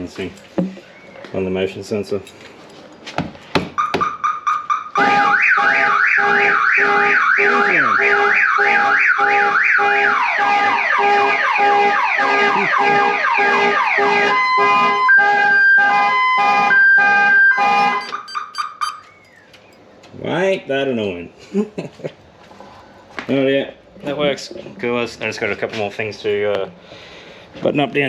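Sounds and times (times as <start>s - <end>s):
car alarm siren: 3.8s - 19.4s.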